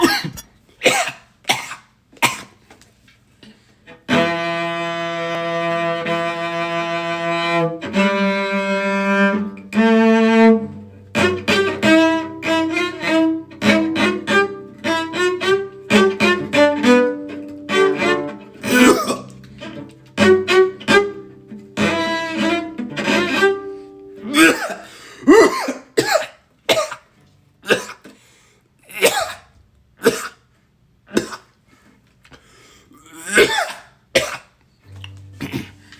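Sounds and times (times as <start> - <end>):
person coughing: 0.0 - 2.6, 18.6 - 19.3, 24.3 - 28.0, 28.9 - 30.4, 31.1 - 31.6, 33.0 - 34.5, 35.4 - 35.9
bowed cello: 3.9 - 24.5, 34.9 - 35.9.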